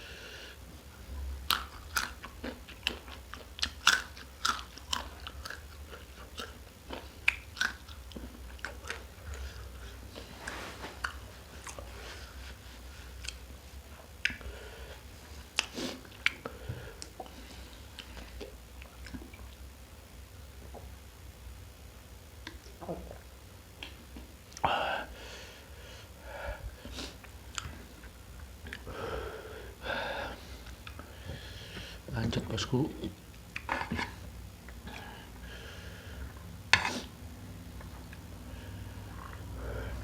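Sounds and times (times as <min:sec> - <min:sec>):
soft chewing: 0:01.1 - 0:19.7, 0:30.5 - 0:32.0, 0:37.7 - 0:39.7
food crunching in mouth: 0:01.4 - 0:09.6.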